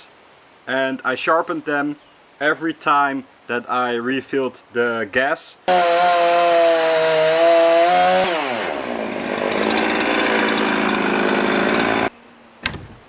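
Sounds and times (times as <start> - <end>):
chainsaw cutting log: 5.7 - 13.0
sharp knocks: 12.6 - 13.0.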